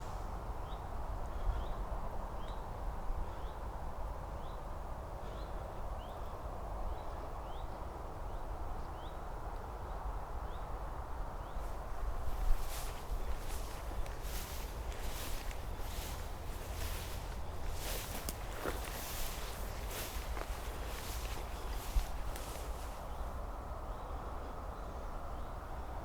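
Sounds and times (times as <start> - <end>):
small bird chirping: 11.6 - 23.3
wind noise: 11.6 - 23.4.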